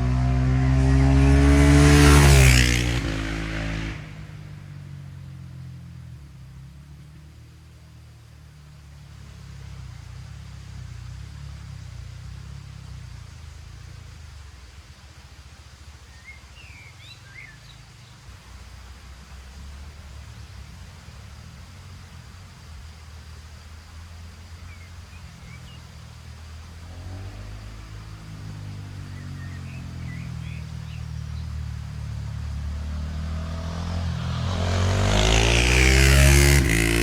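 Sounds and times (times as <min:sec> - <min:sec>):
motorcycle engine passing by: 0:00.0 - 0:37.0
faint bird chirps: 0:15.9 - 0:18.5, 0:21.4 - 0:34.7.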